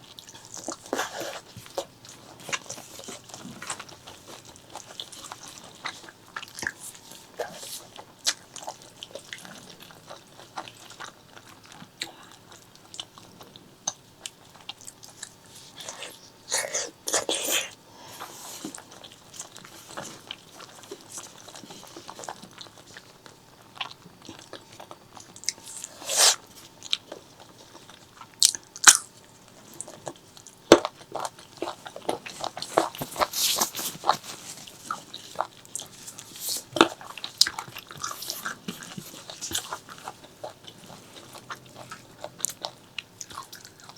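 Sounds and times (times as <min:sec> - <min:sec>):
chewing and mouth smacks: 0:00.0 - 0:43.9.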